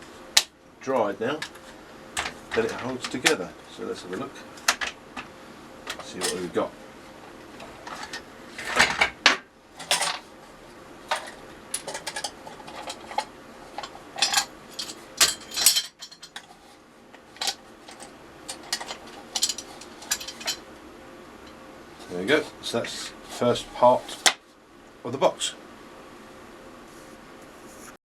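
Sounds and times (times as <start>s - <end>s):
metal clamps clicking and clattering: 11.1s - 16.5s, 17.4s - 20.6s.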